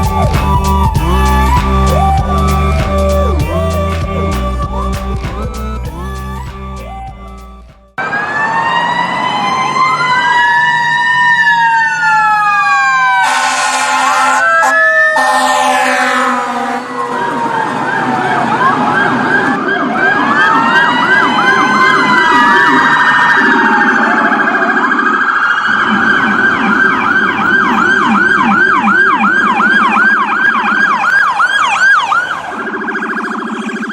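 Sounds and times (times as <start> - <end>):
low pulsing tone: 0.0 - 7.9
emergency vehicle siren: 0.0 - 33.9.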